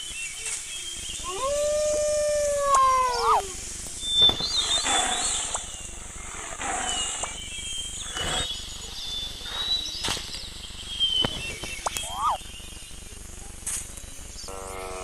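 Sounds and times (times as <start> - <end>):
high bird chirps: 0.4 - 13.1
animal short rough calls: 4.4 - 7.4.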